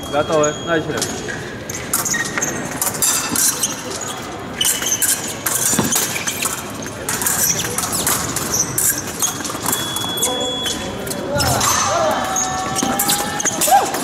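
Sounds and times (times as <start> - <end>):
shoes squeaking and stamping: 0.0 - 14.0
fencing blades clinking and scraping: 0.3 - 14.0
murmur of voices: 2.8 - 14.0.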